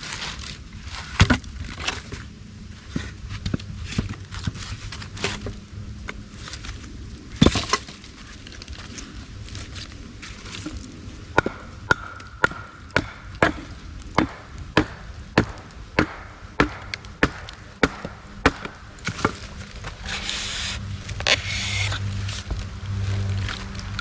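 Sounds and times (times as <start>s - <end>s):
tool chopping into wood: 11.4s - 19.4s.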